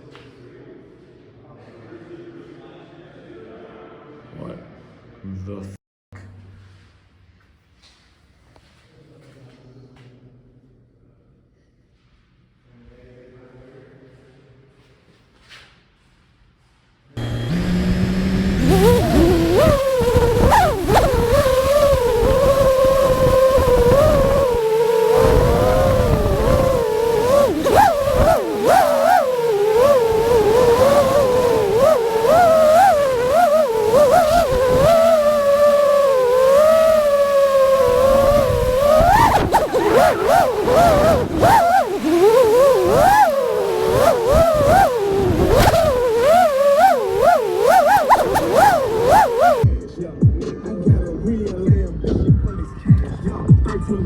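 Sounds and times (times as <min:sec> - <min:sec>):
quadcopter motors whining: 0:17.2 - 0:49.6.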